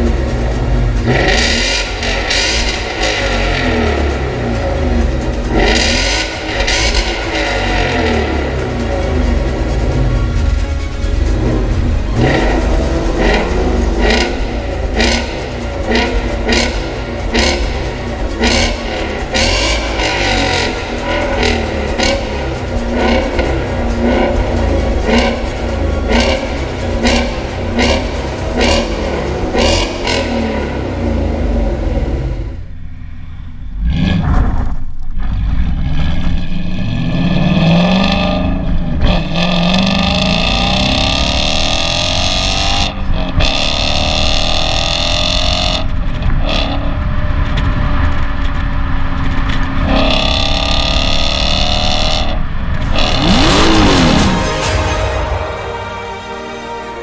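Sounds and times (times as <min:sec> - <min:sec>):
car engine revving: 0:00.0 - 0:57.0
car accelerating through gears: 0:49.8 - 0:55.5.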